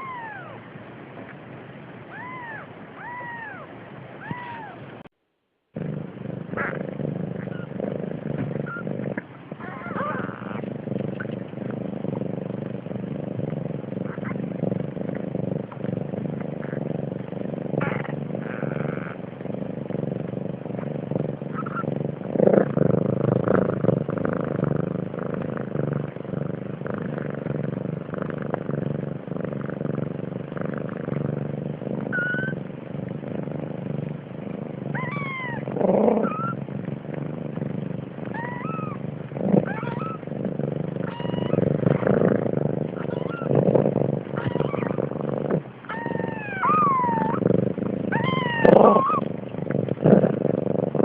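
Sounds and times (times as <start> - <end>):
cat meowing: 0.0 - 0.6, 2.1 - 4.8, 9.6 - 10.6, 32.1 - 32.6, 34.9 - 35.6, 38.3 - 39.0, 39.7 - 40.2, 41.1 - 41.6, 43.0 - 43.5, 44.4 - 45.0, 45.9 - 47.4, 48.1 - 49.3.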